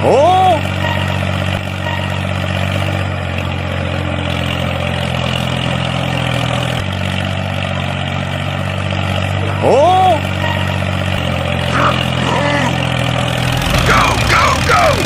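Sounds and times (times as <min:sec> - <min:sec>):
motor humming: 0:10.4 - 0:15.0.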